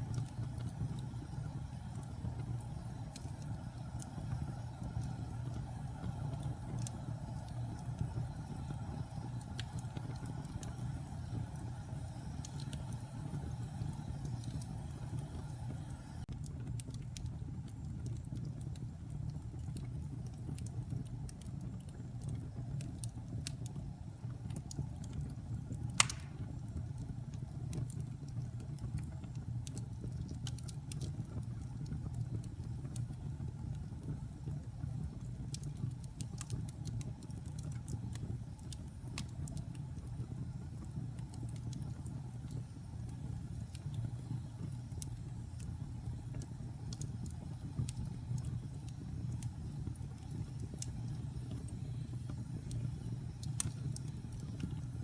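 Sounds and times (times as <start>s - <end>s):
fireplace fire crackling: 0.0s - 55.0s
loud pop from fire: 26.0s - 26.6s.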